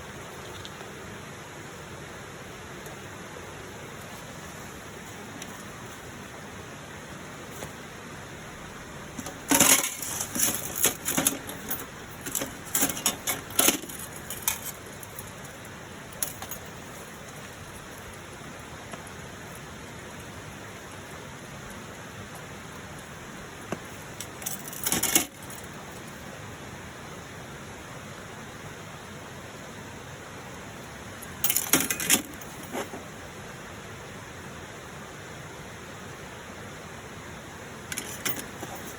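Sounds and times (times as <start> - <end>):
metal pieces clinking: 9.2 - 15.3, 16.2 - 16.8, 24.2 - 25.7, 31.4 - 32.9, 37.9 - 38.9.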